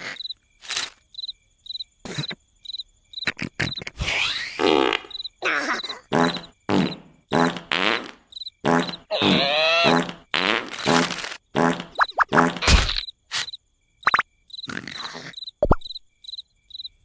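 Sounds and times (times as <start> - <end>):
cartoon grunts and squeaks: 3.2 - 4.6, 5.4 - 7.0, 8.7 - 10.2, 11.8 - 13.5, 14.1 - 15.5
wavering cartoon vocal sound: 5.4 - 6.4, 8.9 - 10.2.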